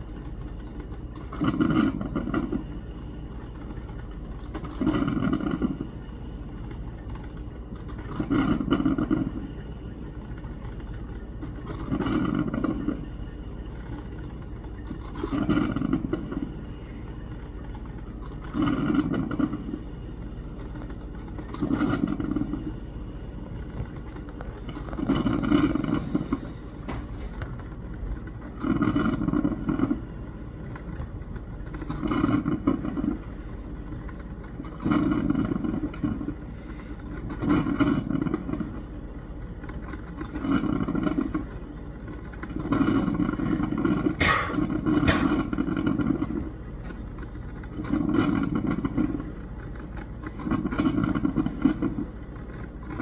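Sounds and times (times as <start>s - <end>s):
coffee maker brewing: 0.0s - 53.0s.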